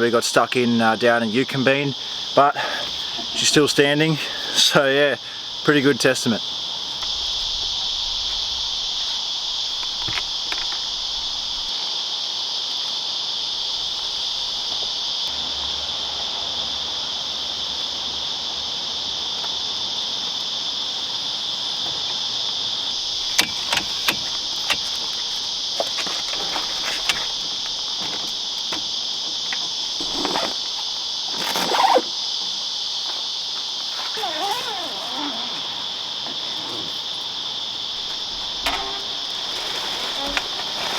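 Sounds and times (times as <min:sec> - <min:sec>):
insects droning: 0:00.0 - 0:40.9
scraping rustle: 0:22.9 - 0:28.7, 0:29.3 - 0:32.2, 0:33.8 - 0:37.3, 0:38.0 - 0:40.9
sharp clicks and knocks: 0:23.2 - 0:30.2.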